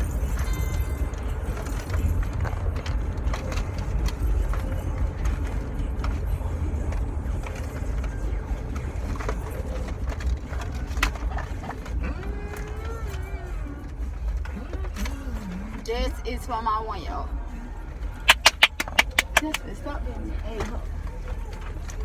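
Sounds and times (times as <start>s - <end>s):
low rumble inside a car: 0.0s - 18.2s, 19.5s - 22.0s
items being handled: 0.1s - 15.8s, 18.3s - 19.7s.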